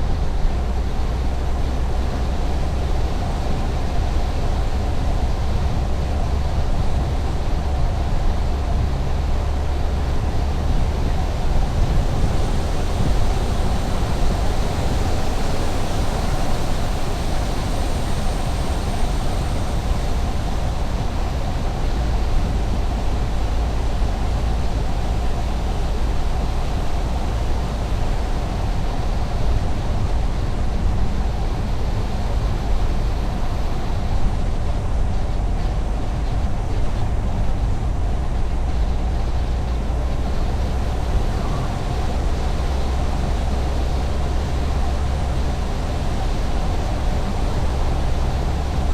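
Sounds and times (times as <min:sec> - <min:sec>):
car road noise: 0:00.0 - 0:48.9
tyre hiss: 0:10.8 - 0:28.5.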